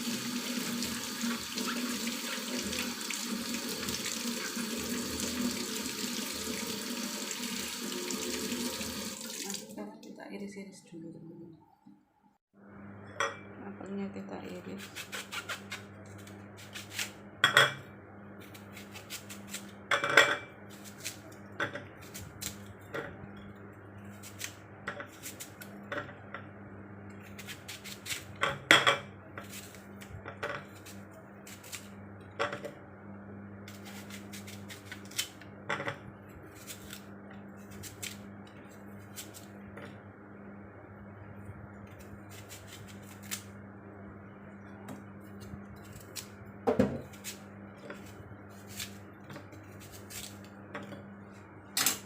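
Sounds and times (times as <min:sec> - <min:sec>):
knife slicing an apple: 0:14.8 - 0:17.2, 0:18.4 - 0:19.8, 0:20.7 - 0:21.4, 0:27.3 - 0:28.4, 0:33.7 - 0:35.4, 0:41.9 - 0:43.5, 0:45.4 - 0:50.5.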